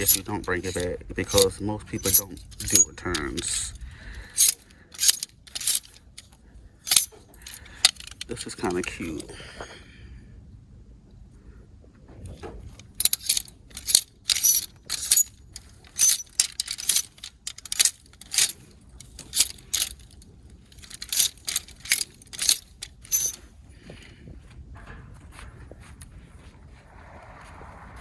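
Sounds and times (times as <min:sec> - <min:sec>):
hangers clicking along metal rack: 0:00.0 - 0:09.2, 0:12.4 - 0:23.4.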